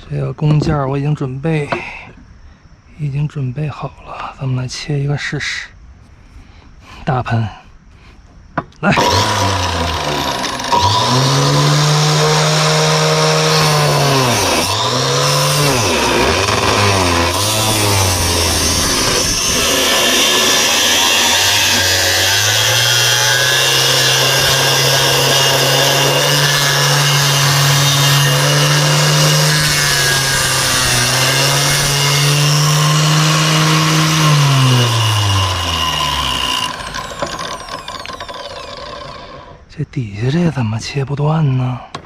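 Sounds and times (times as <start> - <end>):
angle grinder cutting: 8.8 - 39.6.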